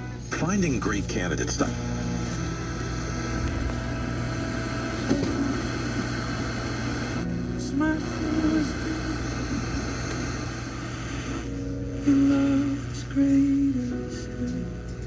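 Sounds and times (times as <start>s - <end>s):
low hum: 0.0s - 15.0s
radio music with held notes: 0.0s - 15.0s.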